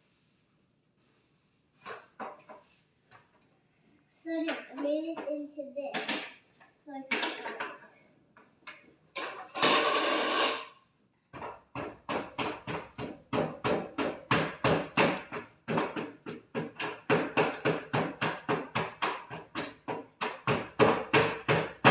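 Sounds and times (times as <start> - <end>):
sharp knocks on hard surface: 11.3 - 21.9.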